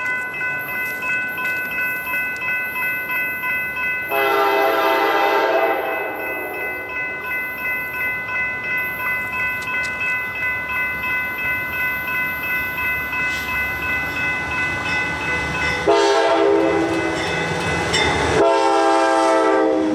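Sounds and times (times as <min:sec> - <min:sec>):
pulsing ringing tone: 0:00.0 - 0:04.4, 0:05.8 - 0:18.4
train rumble: 0:04.0 - 0:19.9
locomotive air horn blasts: 0:04.1 - 0:06.2, 0:15.8 - 0:16.8, 0:18.4 - 0:19.9.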